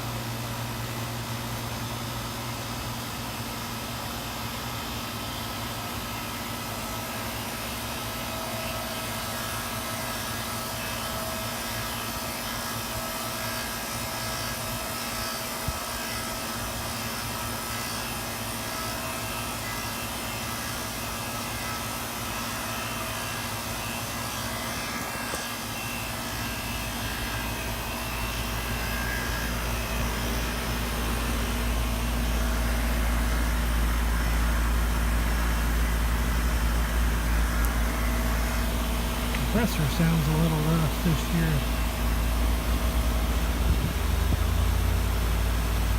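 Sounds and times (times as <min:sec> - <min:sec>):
air conditioner humming: 0:26.1 - 0:45.9.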